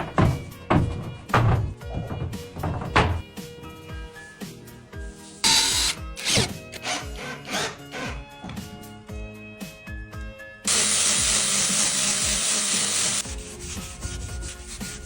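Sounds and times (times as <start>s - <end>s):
background music: 0.0s - 15.0s
power tool bursts: 5.2s - 8.1s, 10.7s - 13.2s
power sander on wood: 10.7s - 13.3s.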